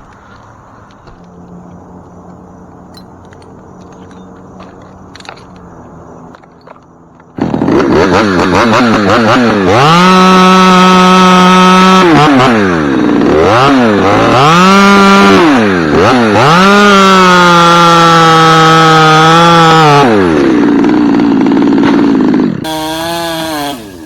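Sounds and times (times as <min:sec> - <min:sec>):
chainsaw revving: 0:07.3 - 0:24.0.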